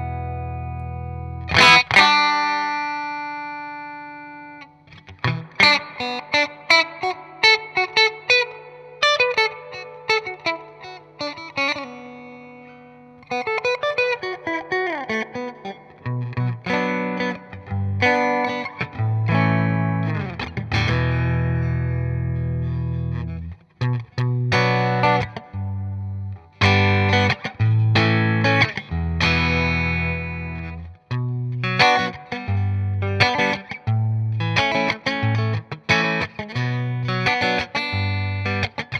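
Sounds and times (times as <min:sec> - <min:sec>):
electric guitar notes and chords: 0:00.0 - 0:38.9.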